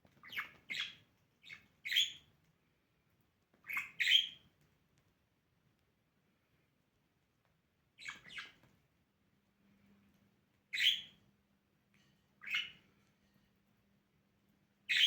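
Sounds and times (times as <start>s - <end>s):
budgerigar chirping: 0.2s - 2.3s, 3.6s - 4.4s, 8.0s - 8.6s, 10.7s - 11.2s, 12.4s - 12.8s.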